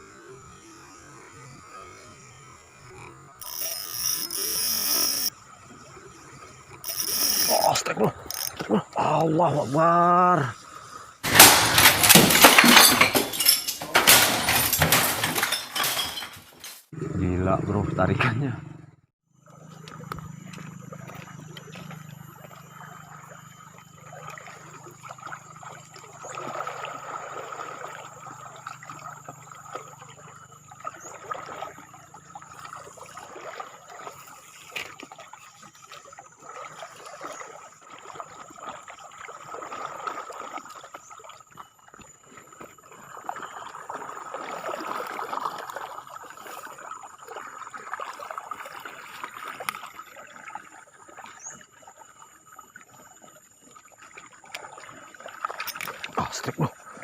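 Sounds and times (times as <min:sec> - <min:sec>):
faint steady high tone: 0:00.0 - 0:10.6.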